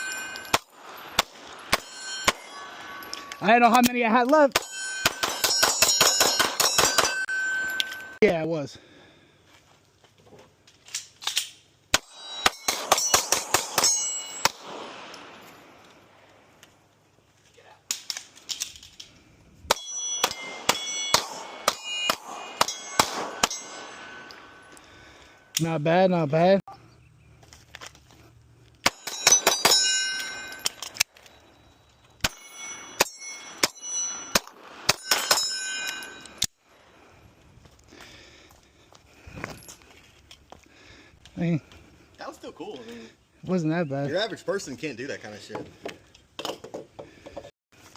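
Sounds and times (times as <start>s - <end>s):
gunshots: 0.0s - 2.8s, 4.5s - 7.3s, 11.9s - 15.4s, 19.7s - 24.3s
steel targets clanging: 0.0s - 8.4s, 12.0s - 15.5s, 19.7s - 24.8s, 28.8s - 36.5s.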